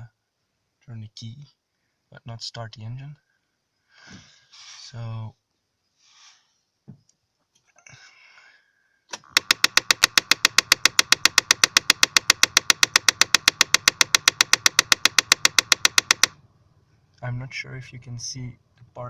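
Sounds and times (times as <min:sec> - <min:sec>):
rapid even clicking: 0:09.2 - 0:16.4.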